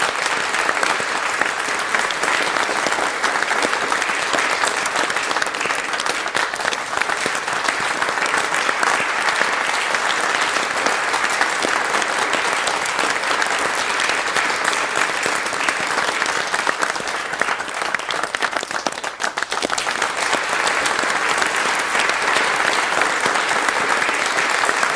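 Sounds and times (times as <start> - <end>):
crowd applauding: 0.0 - 24.9.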